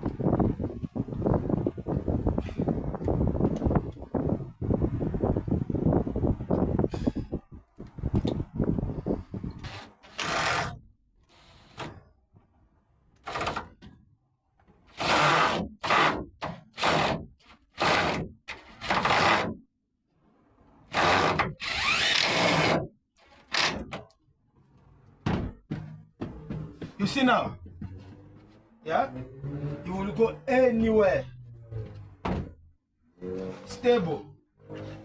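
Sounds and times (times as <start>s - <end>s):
shelving rack knocking and scraping: 25.2s - 28.4s, 32.2s - 32.7s.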